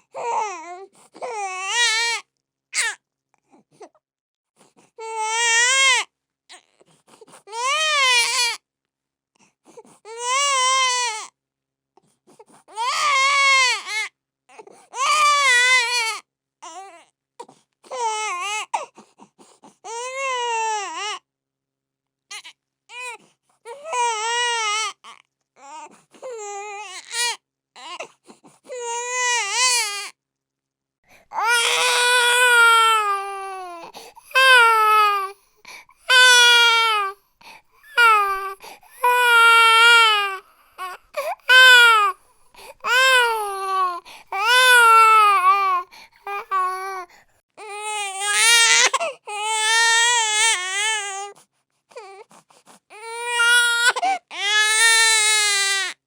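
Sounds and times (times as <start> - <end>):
baby crying: 0.2 - 2.2, 12.7 - 14.1, 14.9 - 16.9, 28.7 - 30.1, 31.2 - 51.3, 52.9 - 56.0.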